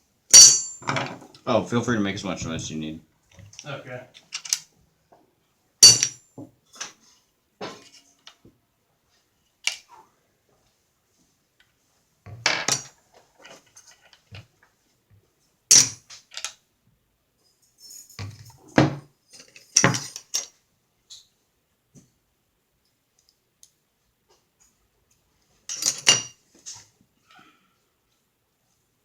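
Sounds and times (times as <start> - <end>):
metal parts clinking and knocking: 0.3 - 1.2, 4.2 - 4.7, 5.8 - 6.2, 17.8 - 20.5, 25.7 - 26.4.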